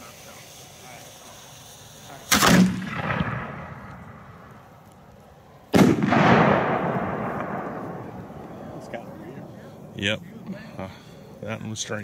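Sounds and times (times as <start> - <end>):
firework bang: 2.1 - 4.4, 5.7 - 8.9
echoing rumble: 5.7 - 10.5.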